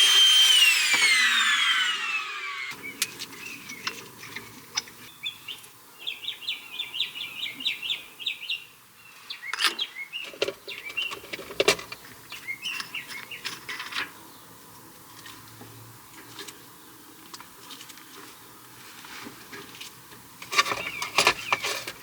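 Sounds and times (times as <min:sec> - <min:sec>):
small birds chirping: 0:02.7 - 0:04.0, 0:04.8 - 0:11.3, 0:11.9 - 0:14.6, 0:20.7 - 0:22.0.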